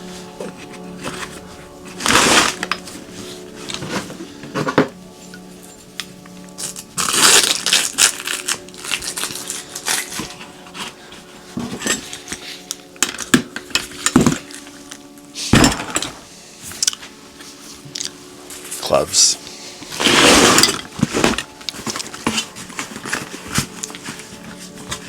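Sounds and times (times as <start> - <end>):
soft background music: 0.0 - 25.0
metal hand tools clanking: 0.4 - 17.1, 17.9 - 24.2.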